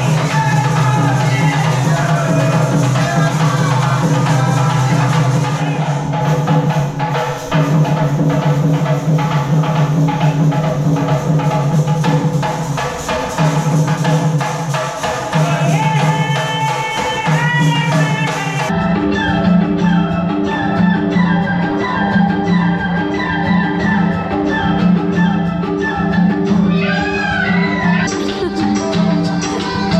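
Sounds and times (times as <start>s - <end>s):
steady drum beat: 0.0s - 18.7s.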